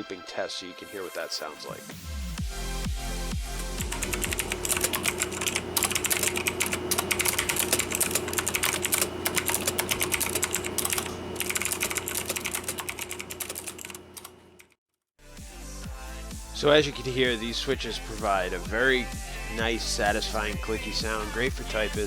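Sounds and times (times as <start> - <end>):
fast typing on clicky keyboard: 3.8 - 14.4.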